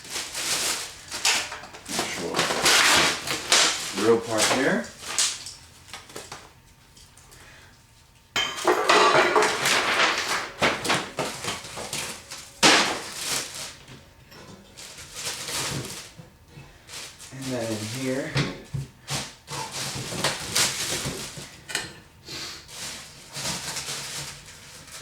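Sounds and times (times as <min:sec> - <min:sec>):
packing material rustling: 0:00.0 - 0:06.4, 0:09.4 - 0:14.0, 0:14.7 - 0:21.6, 0:22.6 - 0:25.0
metal grill parts clattering: 0:01.1 - 0:05.6, 0:08.4 - 0:16.2.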